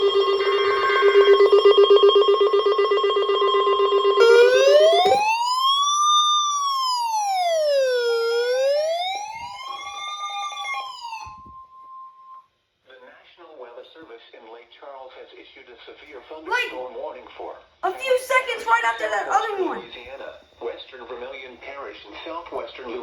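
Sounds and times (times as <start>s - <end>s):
buzzing bell-like alarm ring: 0.0s - 5.2s
steady high tone: 0.0s - 5.3s
electronic siren wailing: 0.0s - 12.4s.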